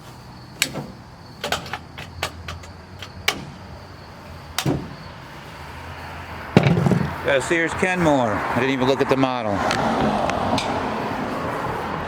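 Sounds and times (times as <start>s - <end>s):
hard objects clicking and knocking: 0.6s - 3.6s, 6.6s - 7.2s.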